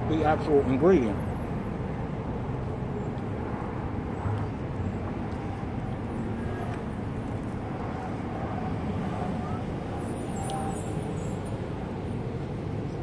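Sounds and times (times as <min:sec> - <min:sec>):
traffic rumble: 0:00.0 - 0:13.0.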